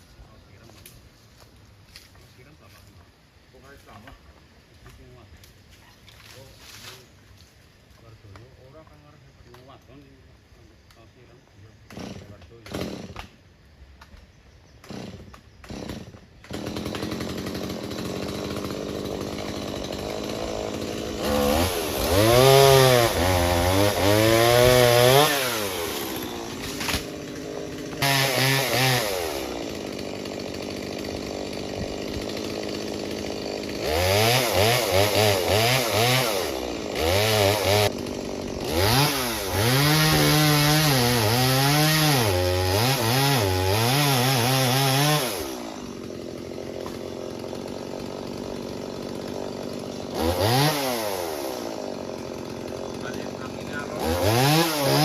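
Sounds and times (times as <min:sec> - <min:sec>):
chainsaw engine idling and revving: 0:11.8 - 0:13.4, 0:14.8 - 0:55.0.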